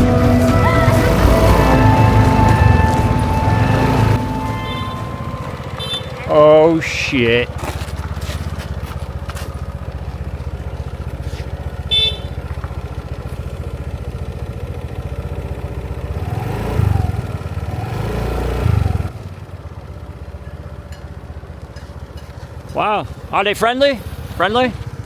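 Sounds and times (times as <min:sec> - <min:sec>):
horn beep: 0:00.0 - 0:07.6, 0:11.8 - 0:12.5
motorbike engine running: 0:00.0 - 0:25.0
road noise: 0:00.0 - 0:25.0.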